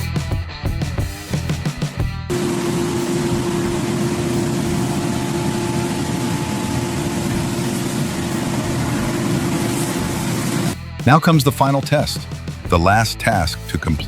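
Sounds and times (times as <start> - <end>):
excavator engine drone: 2.3 - 10.8.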